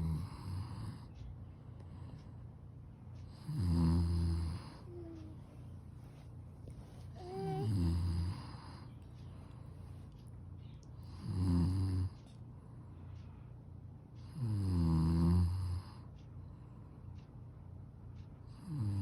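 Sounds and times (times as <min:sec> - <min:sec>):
person snoring: 0:03.3 - 0:05.2, 0:07.2 - 0:08.8, 0:11.1 - 0:12.2, 0:14.4 - 0:15.9.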